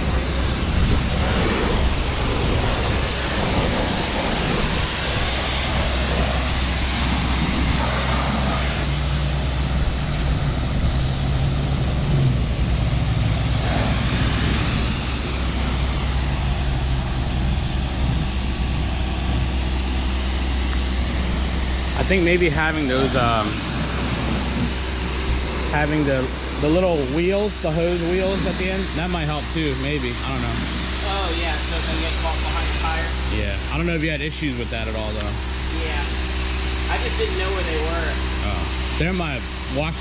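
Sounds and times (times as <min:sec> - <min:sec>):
high-pressure water spray hiss: 0:00.0 - 0:40.0
pressure washer motor hum: 0:00.0 - 0:40.0.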